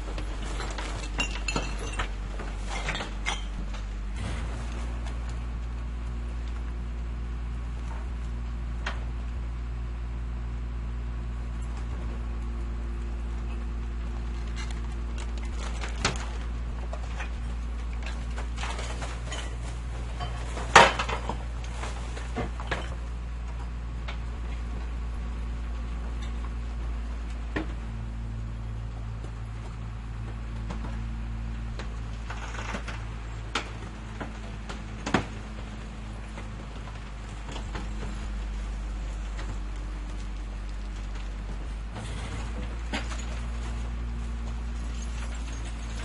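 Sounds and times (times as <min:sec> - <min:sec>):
garbage truck engine rumbling: 0:00.0 - 0:46.0
metal clanks and knocks: 0:00.1 - 0:05.9, 0:14.4 - 0:24.2, 0:41.4 - 0:46.0
loud bang: 0:04.1 - 0:05.4.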